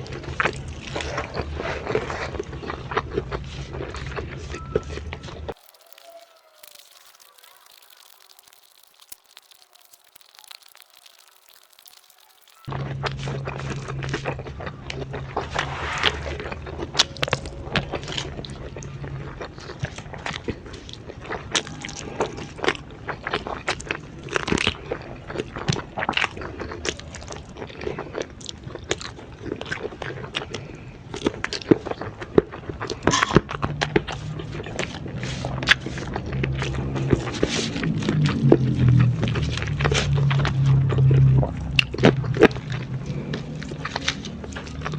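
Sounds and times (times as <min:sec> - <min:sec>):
crunchy chewing: 0:05.5 - 0:12.7, 0:41.8 - 0:44.9.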